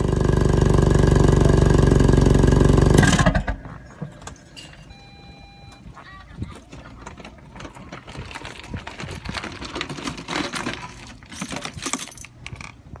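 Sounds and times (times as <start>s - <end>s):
car exhaust rumble and chatter: 0.0s - 4.8s.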